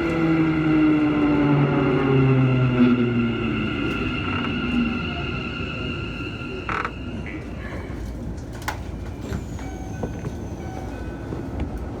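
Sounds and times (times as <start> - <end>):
train inverter whining tones: 0.0 - 7.7
train running rumble: 0.0 - 12.0.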